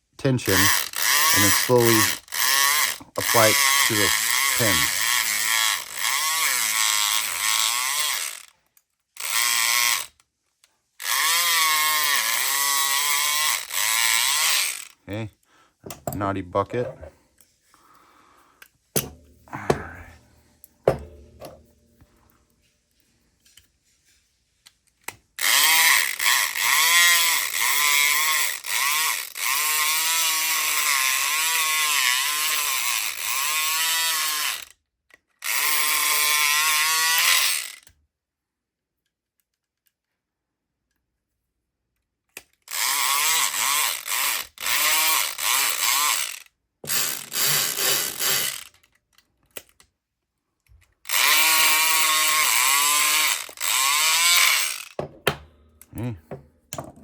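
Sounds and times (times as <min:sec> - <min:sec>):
electric lock pick gun buzzing: 0:00.5 - 0:08.5, 0:09.2 - 0:10.2, 0:11.0 - 0:15.0, 0:19.0 - 0:20.3, 0:20.9 - 0:21.7, 0:25.4 - 0:34.7, 0:35.4 - 0:37.9, 0:42.7 - 0:48.8, 0:51.1 - 0:56.9.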